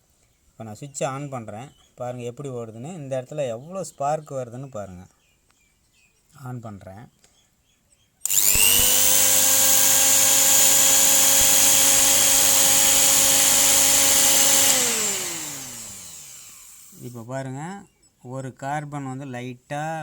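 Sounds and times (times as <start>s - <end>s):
electric motor whining: 8.2s - 17.1s.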